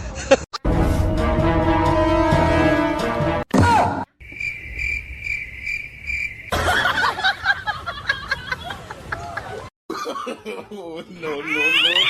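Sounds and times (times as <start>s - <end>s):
background music: 0.6s - 3.5s
cricket chirping: 4.2s - 6.6s.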